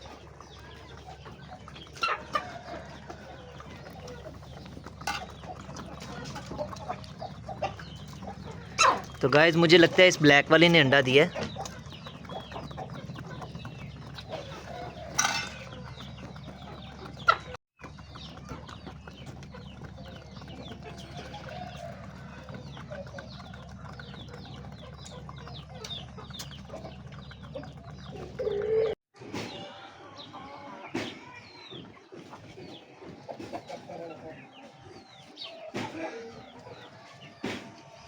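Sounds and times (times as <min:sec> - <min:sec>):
chickens clucking: 0:00.0 - 0:38.0.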